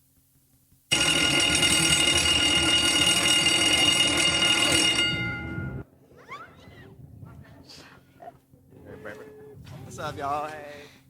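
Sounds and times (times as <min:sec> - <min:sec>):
electric bell ringing: 0:00.9 - 0:05.8.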